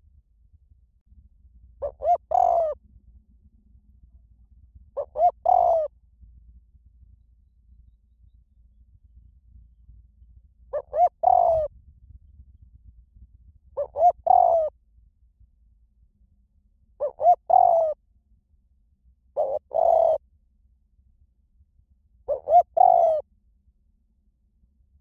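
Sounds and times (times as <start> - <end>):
dove cooing: 1.8 - 2.8, 5.0 - 5.9, 10.7 - 11.7, 13.8 - 14.7, 17.0 - 18.0, 19.4 - 20.2, 22.3 - 23.2.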